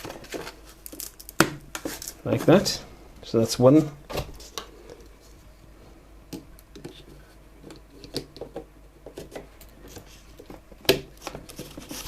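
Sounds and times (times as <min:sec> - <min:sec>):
rustling handling noises: 0:00.0 - 0:05.6, 0:06.7 - 0:12.0.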